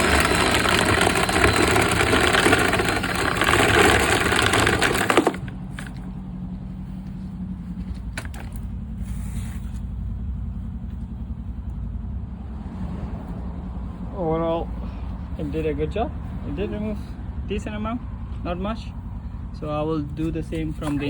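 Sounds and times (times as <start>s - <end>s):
drill spinning brush rattling: 0.0s - 6.1s.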